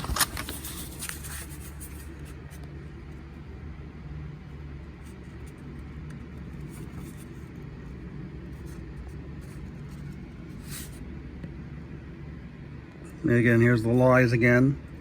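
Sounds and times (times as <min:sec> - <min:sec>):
paper rustling: 0:00.0 - 0:02.6
low background hum: 0:00.0 - 0:15.0.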